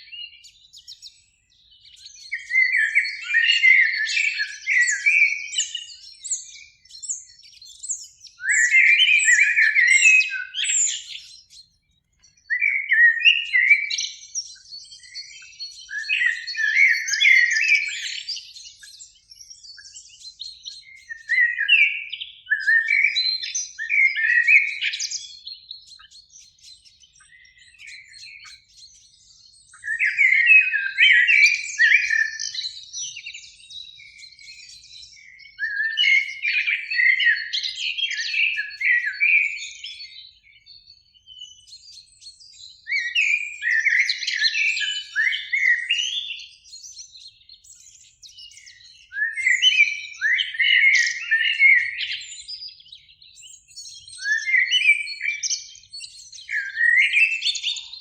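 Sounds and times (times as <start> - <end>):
blackbird singing: 0.0 - 58.0.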